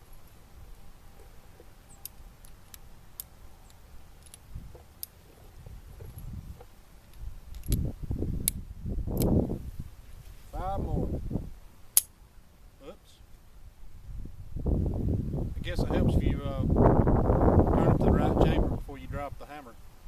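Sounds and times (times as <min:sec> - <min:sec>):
low rumbling handling noise: 0:00.0 - 0:12.1
revolver metallic clicks: 0:01.9 - 0:05.2.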